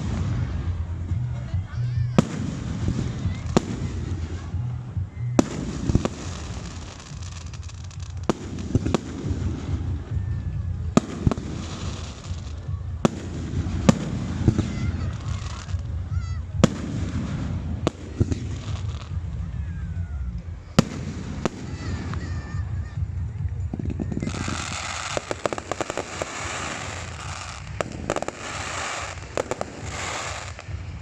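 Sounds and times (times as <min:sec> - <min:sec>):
fireworks bangs: 0:00.0 - 0:19.6, 0:20.6 - 0:31.0
low rumble: 0:00.0 - 0:31.0.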